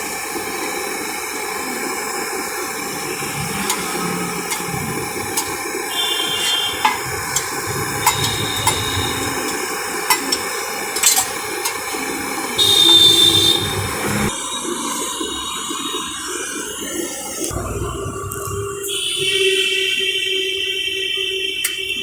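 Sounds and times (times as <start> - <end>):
high-pitched ringing tone: 3.2 - 16.5.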